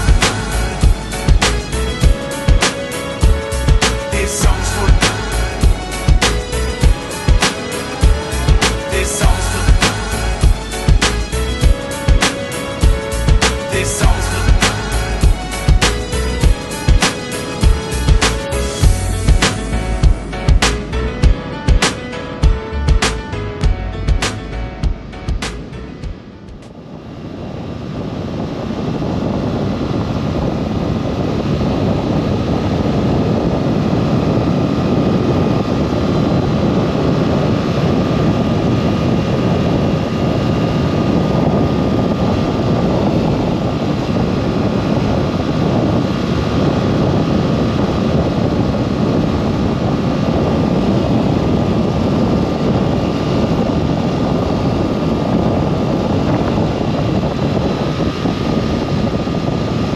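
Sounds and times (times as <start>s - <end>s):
motorcycle engine running: 0.0s - 26.7s
wind noise: 0.0s - 59.9s.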